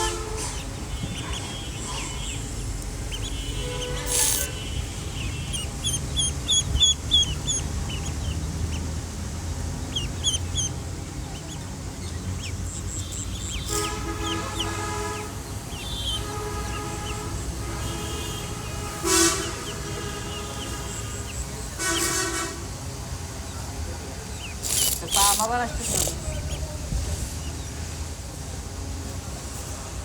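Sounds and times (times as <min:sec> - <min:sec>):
long horn-like tones: 0:00.0 - 0:02.2, 0:13.6 - 0:22.8
baby chicks peeping: 0:00.0 - 0:22.1, 0:24.2 - 0:26.8.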